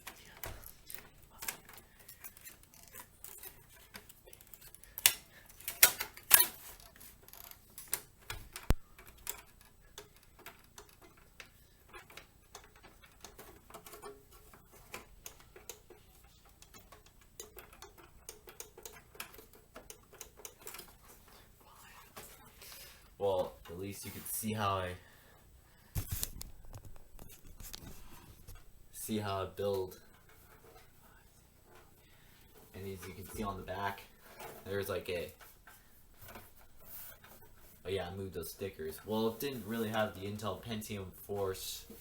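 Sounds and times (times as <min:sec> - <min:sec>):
small clicks and taps: 0:00.0 - 0:21.4, 0:25.9 - 0:28.7.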